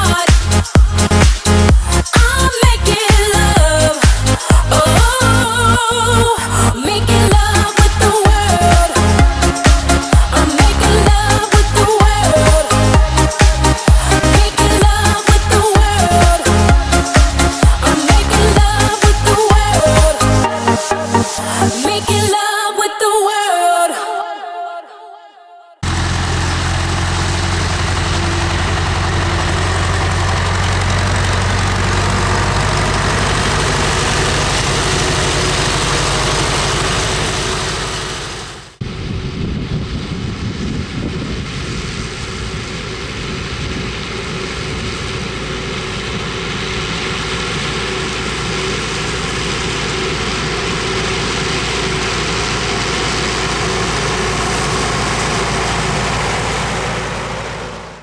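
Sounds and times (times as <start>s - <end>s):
tractor diesel engine running: 0.0s - 22.3s, 25.8s - 58.0s.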